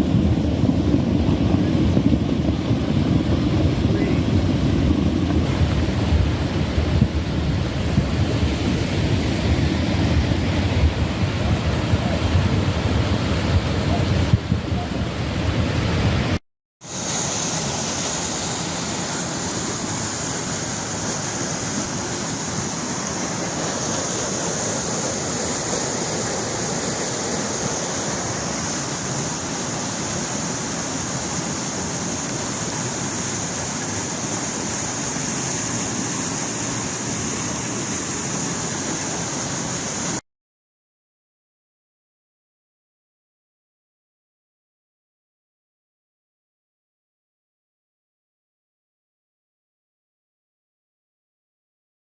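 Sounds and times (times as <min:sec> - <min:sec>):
water rushing: 0:00.0 - 0:40.2.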